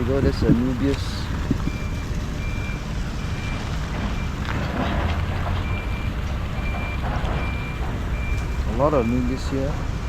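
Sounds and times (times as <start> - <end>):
reversing alarm beeping: 1.6 - 4.4, 5.6 - 9.5.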